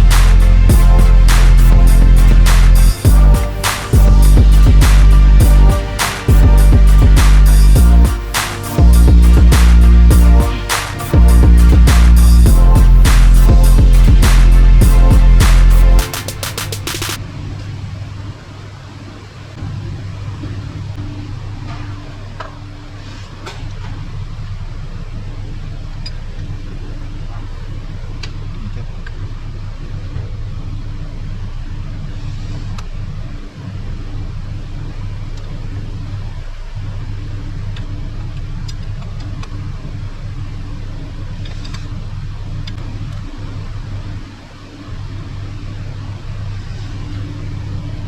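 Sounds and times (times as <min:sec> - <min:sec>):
low machine hum: 0:00.0 - 0:28.7.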